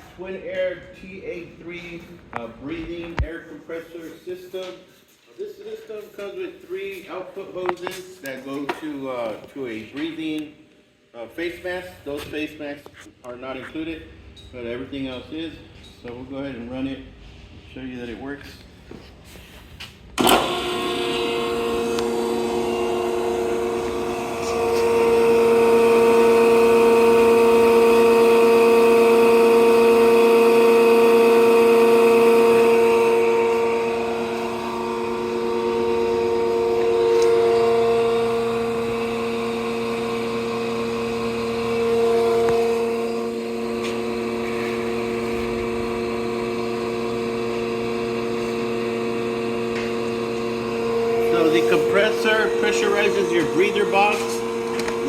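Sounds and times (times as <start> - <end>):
air compressor humming: 18.8 - 55.0.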